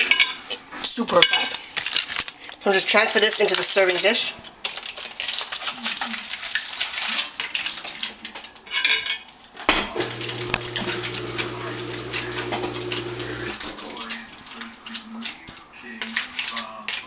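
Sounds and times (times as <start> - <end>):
utensils clinking and scraping: 10.0 - 17.0.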